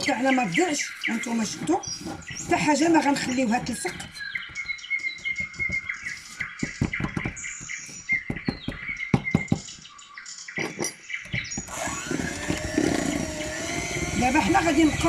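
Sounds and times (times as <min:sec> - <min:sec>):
spatula scraping a mixing bowl: 0:00.0 - 0:06.6
birds chirping: 0:00.0 - 0:15.0
motor hum: 0:11.6 - 0:15.0.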